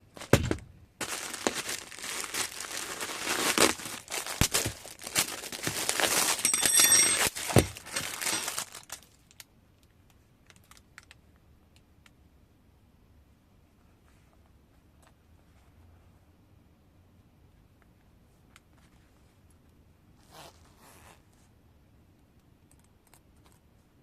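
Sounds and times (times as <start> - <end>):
crinkling and rustling: 0.0 - 11.2.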